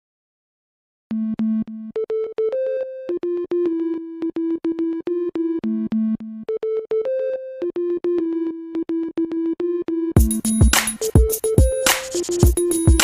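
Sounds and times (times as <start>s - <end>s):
synthesizer melody: 1.1s - 13.0s
clicking beat: 10.2s - 13.0s.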